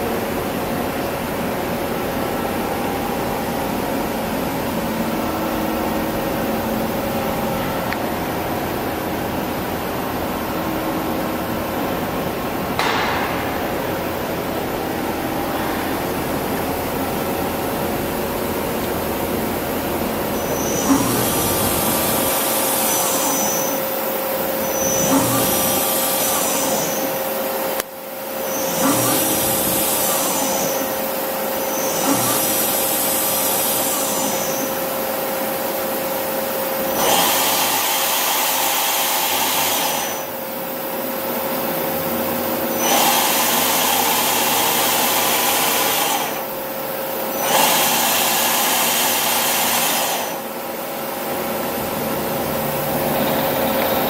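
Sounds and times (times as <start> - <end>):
lathe humming: 15.5 - 41.7.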